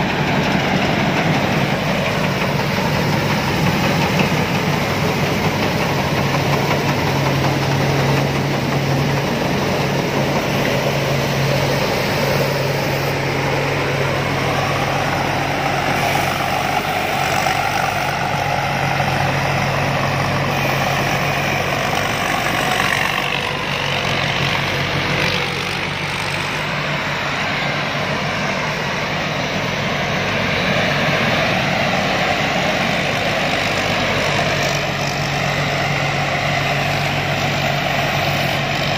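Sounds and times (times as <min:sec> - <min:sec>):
combine harvester engine running: 0:00.0 - 0:38.9.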